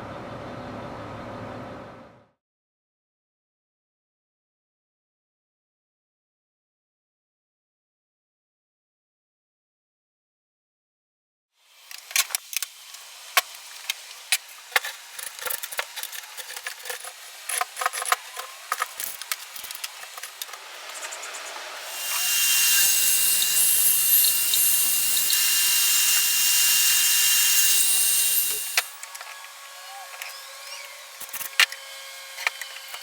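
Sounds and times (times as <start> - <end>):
wood and tools clicking and knocking: 14.3 - 21.0
power tool whining: 21.8 - 33.0.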